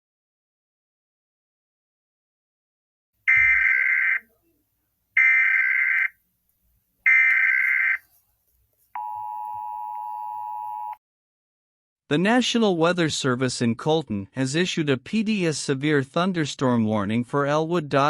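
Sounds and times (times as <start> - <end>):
bursts of data tones: 3.3 - 4.2
steady warning alarm tone: 3.3 - 4.2, 5.2 - 6.1, 7.1 - 8.0.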